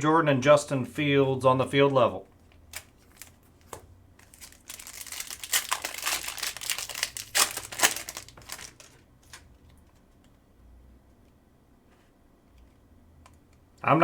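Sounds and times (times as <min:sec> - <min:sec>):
wrapper crinkling: 0:02.4 - 0:10.1.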